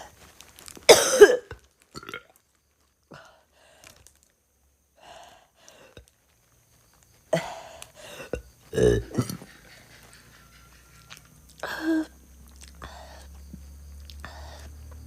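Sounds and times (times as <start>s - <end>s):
girl coughing and retching: 0.9s - 2.3s, 8.7s - 9.4s.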